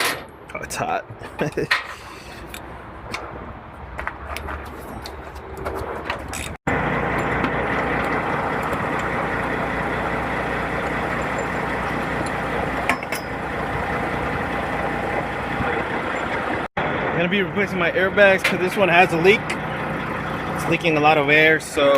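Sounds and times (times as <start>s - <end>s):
diesel truck engine idling: 6.7s - 21.9s.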